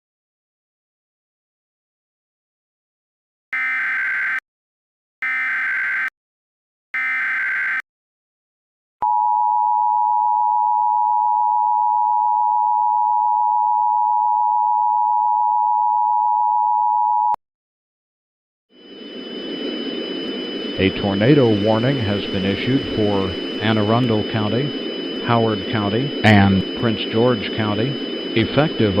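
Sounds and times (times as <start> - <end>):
screechy digital header bursts: 19.3 - 29.0
two-tone alert signal: 20.7 - 29.0.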